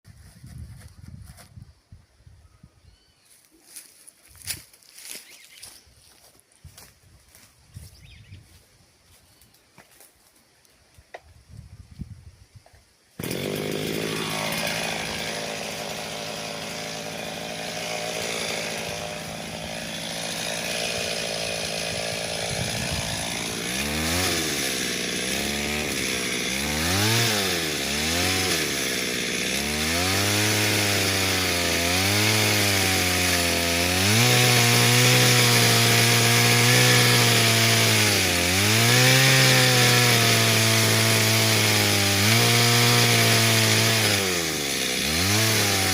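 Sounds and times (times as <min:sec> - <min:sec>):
chainsaw engine revving: 0:13.2 - 0:45.9.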